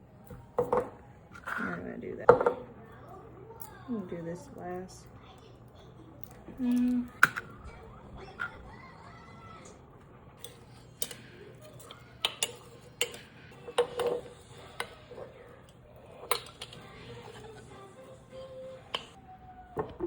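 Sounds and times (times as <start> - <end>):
utensils clinking against dishes: 10.4 - 19.2.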